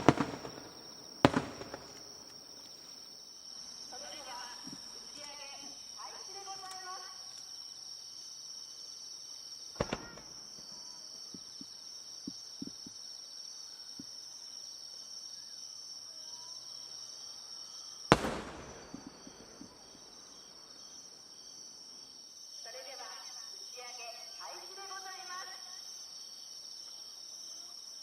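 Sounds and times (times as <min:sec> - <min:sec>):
firework boom with echo: 0:00.0 - 0:02.1, 0:18.1 - 0:20.1
firework bangs: 0:00.0 - 0:03.0, 0:09.8 - 0:10.4, 0:18.1 - 0:21.0
firework crackles: 0:00.0 - 0:03.2, 0:18.1 - 0:21.7
crickets chirping: 0:00.0 - 0:28.0.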